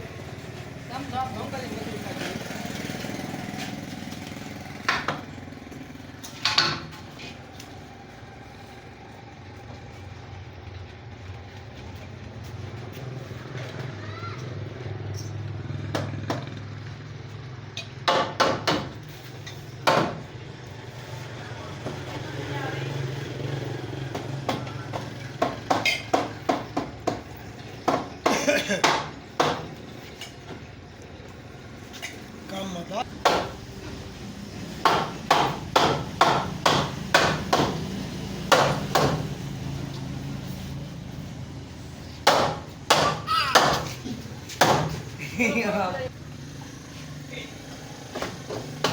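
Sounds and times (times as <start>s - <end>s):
hammer striking wood: 18.0s - 19.0s, 19.8s - 20.2s, 24.1s - 29.7s, 33.2s - 33.6s, 34.8s - 37.8s, 38.5s - 39.3s, 42.2s - 43.9s, 44.6s - 45.0s, 48.2s - 48.9s.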